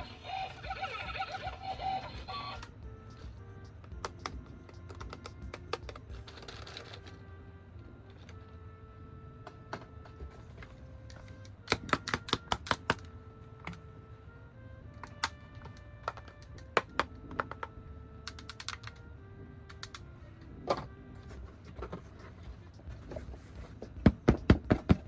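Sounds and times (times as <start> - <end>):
simple electronic melody: 0.0 - 24.0
plastic toy pieces clicking: 4.0 - 7.2, 15.0 - 19.1.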